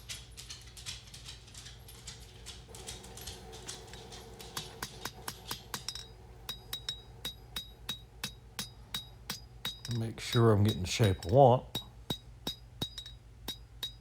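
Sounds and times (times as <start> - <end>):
hammer striking steel on anvil: 4.6 - 14.0.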